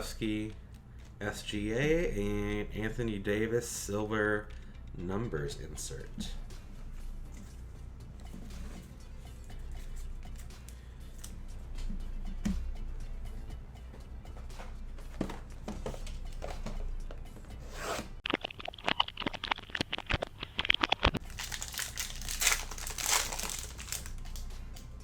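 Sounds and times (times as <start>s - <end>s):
sharp crackles: 18.2s - 24.4s
foil card pack crinkling: 20.8s - 24.9s
packaging tearing: 21.2s - 24.5s.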